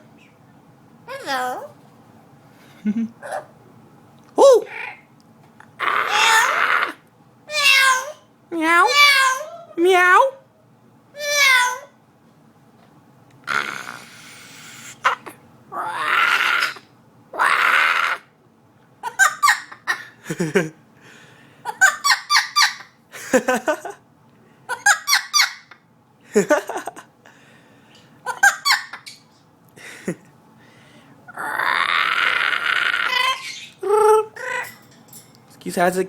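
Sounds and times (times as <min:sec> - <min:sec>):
parrot squawking and chattering: 0:04.6 - 0:05.1, 0:05.8 - 0:09.8, 0:11.2 - 0:12.0, 0:13.4 - 0:18.3, 0:19.0 - 0:20.2, 0:21.7 - 0:23.0, 0:24.7 - 0:25.8, 0:28.2 - 0:29.4, 0:31.3 - 0:34.9.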